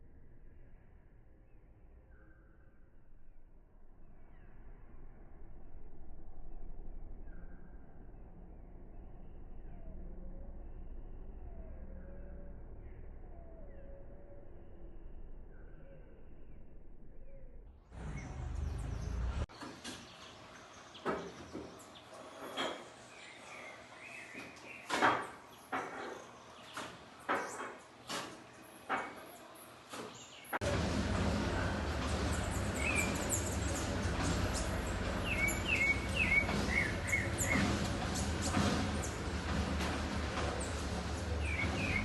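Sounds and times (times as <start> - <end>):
birds chirping: 17.2 - 42.0
low rumble: 30.6 - 42.0
birds chirping and calling: 31.9 - 42.0.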